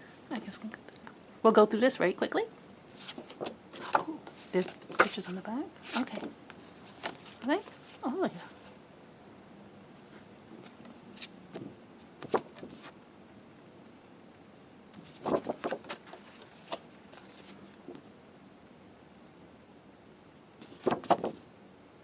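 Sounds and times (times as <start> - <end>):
paper rustling: 2.9 - 8.8, 10.6 - 13.0, 15.0 - 17.6, 20.6 - 21.4.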